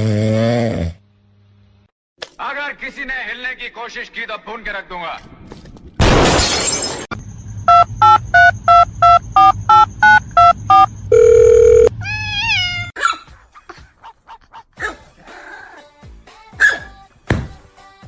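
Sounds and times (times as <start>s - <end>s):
touch-tone keypad beeps: 7.7s - 11.9s.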